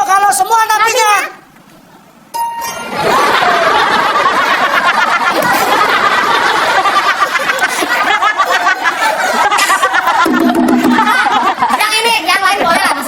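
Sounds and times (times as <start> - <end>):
audience laughing loudly: 2.7 - 13.0.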